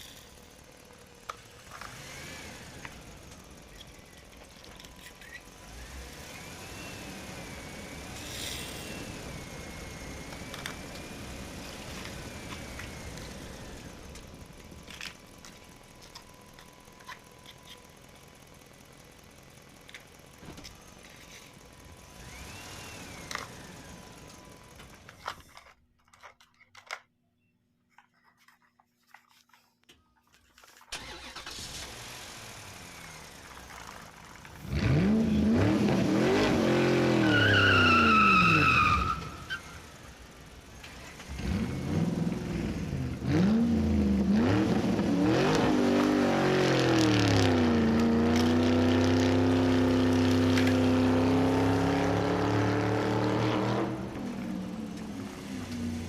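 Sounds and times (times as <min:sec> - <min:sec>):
vehicle engine revving: 0:00.0 - 0:15.8, 0:17.8 - 0:25.0, 0:31.0 - 0:56.0
high squeal: 0:36.6 - 0:39.9.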